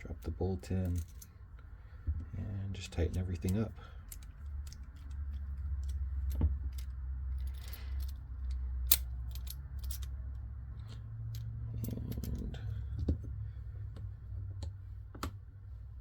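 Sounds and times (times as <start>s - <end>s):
low steady hum: 0.0s - 16.0s
padlock parts clicking: 3.0s - 12.5s.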